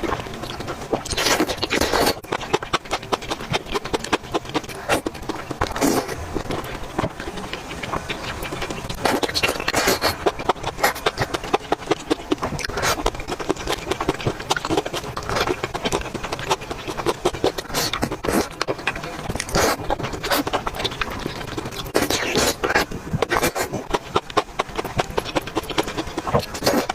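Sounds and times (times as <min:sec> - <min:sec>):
person chewing: 0:00.0 - 0:26.9.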